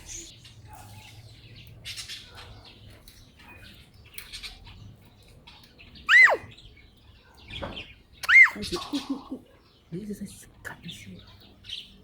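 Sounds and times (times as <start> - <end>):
faint bird chirps: 0.0 - 10.0
bird squawking: 6.0 - 6.6.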